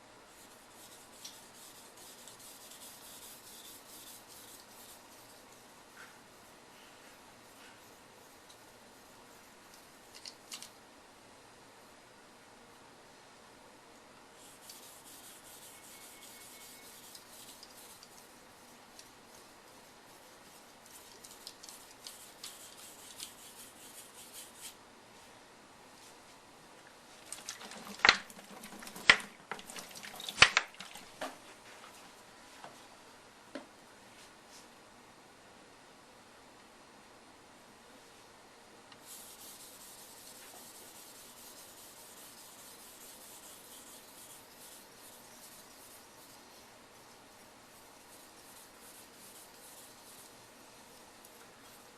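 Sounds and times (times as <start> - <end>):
knife rasping on a whetstone: 0.4 - 5.3, 14.4 - 18.3, 39.0 - 46.3.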